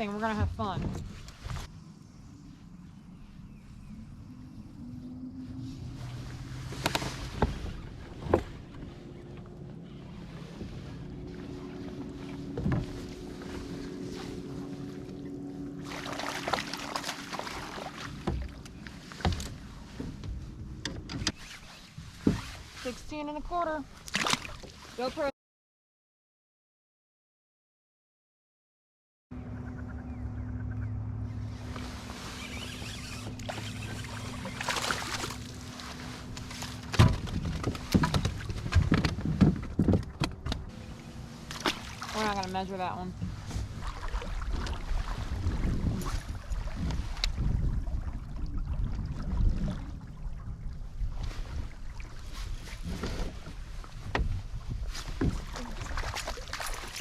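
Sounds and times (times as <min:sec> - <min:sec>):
water rushing and splashing: 0:04.8 - 0:20.3, 0:31.4 - 0:39.0, 0:40.7 - 0:57.0
dull thumps against boat: 0:12.4 - 0:13.2, 0:36.4 - 0:40.7, 0:52.8 - 0:55.9.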